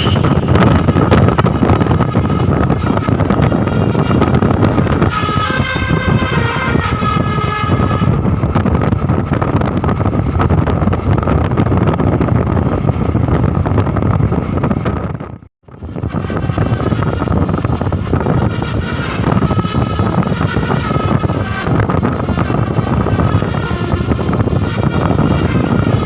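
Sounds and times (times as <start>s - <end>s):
musical bus horn toots: 0.0s - 8.6s, 16.1s - 26.0s
bus road and engine noise: 0.0s - 26.0s.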